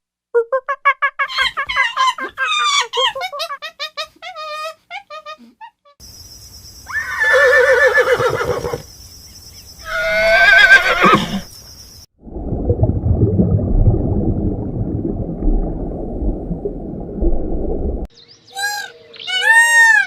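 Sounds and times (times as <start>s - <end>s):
horse whinnying: 6.9s - 8.8s, 9.8s - 11.5s
low rumbling noise: 12.2s - 18.1s.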